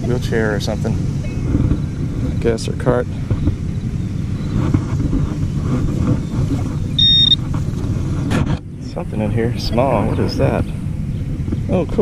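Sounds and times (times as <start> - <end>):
low steady rumble: 0.0 - 12.0
metal detector beep: 7.0 - 7.4.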